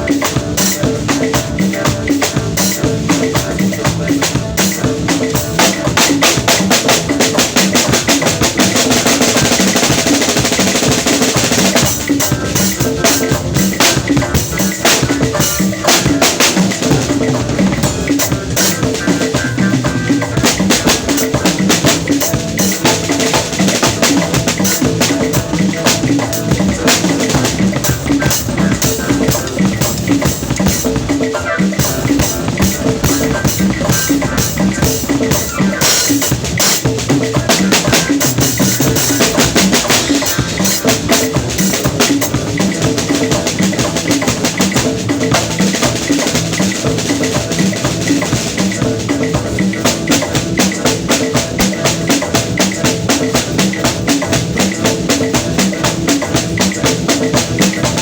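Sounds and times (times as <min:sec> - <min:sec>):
drum kit playing fast: 0:00.0 - 0:58.0
pitched instrument notes: 0:11.1 - 0:47.3.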